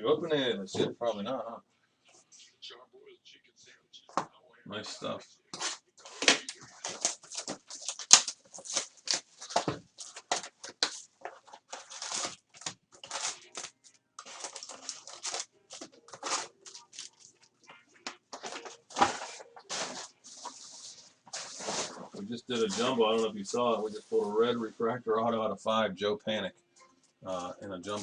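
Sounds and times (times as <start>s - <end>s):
cards being handled: 5.5s - 17.4s, 18.1s - 23.3s
foil wrappers crinkling: 5.5s - 23.3s.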